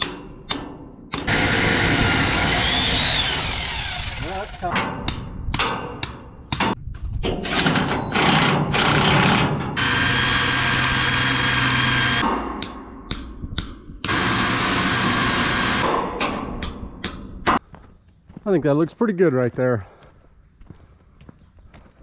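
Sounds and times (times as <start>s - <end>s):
small motor running: 1.3s - 4.7s, 9.8s - 12.2s, 14.1s - 15.8s.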